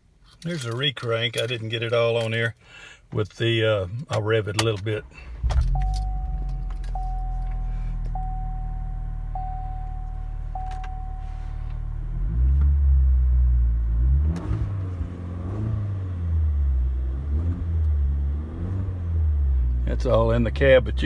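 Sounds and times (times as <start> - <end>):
engine idling and revving: 5.2 - 21.0
chime beeping: 5.7 - 11.7.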